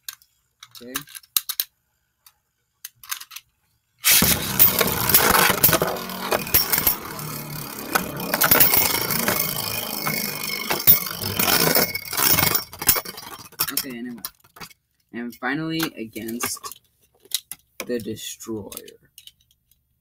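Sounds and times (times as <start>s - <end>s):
spinning tops clattering: 4.1s - 13.8s.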